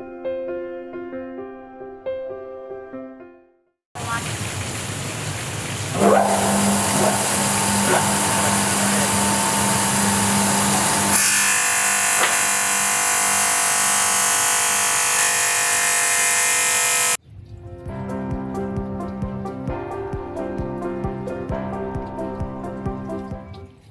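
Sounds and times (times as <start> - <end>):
stone grinding machine: 6.0 - 17.2
background music: 17.3 - 23.9.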